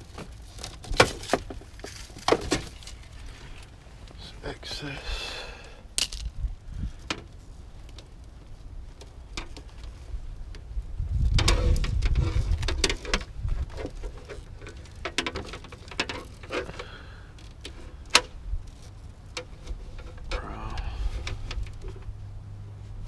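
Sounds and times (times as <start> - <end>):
low steady hum: 0.0 - 23.0
hand tools and wire clicking: 11.3 - 22.1.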